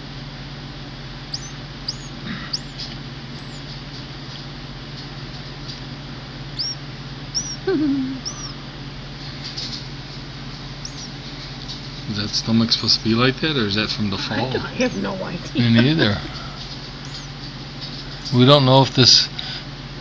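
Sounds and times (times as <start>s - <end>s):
steady low hum: 0.0s - 20.0s
baby bird cheeping: 0.6s - 3.9s, 6.4s - 8.8s, 10.6s - 13.1s, 14.1s - 18.4s.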